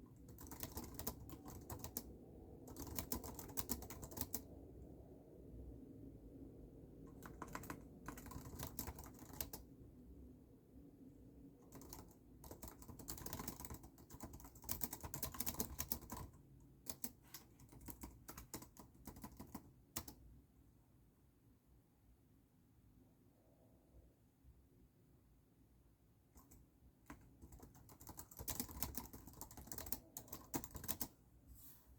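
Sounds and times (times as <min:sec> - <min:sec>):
typing on computer keyboard: 0:00.0 - 0:04.5, 0:07.0 - 0:09.7, 0:11.6 - 0:20.2, 0:26.4 - 0:31.2.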